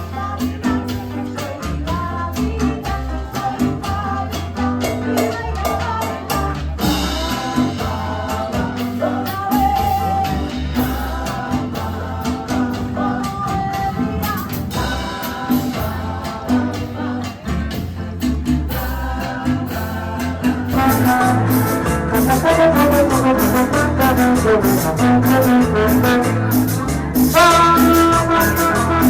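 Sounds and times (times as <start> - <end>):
band music with bass line: 0.0 - 29.0
person singing: 19.2 - 29.0.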